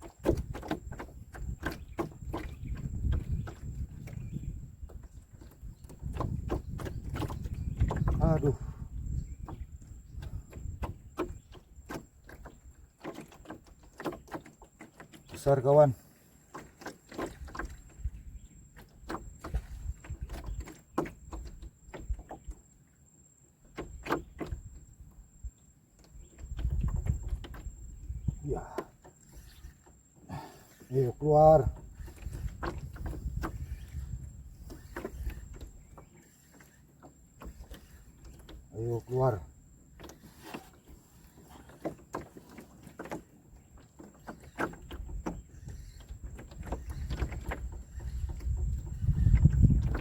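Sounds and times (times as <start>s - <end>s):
wind rumble on microphone: 0.0s - 11.9s, 17.3s - 18.6s, 19.2s - 22.5s, 26.2s - 29.7s, 30.4s - 36.0s, 44.8s - 50.0s
gear and hull clicks and knocks: 0.0s - 50.0s.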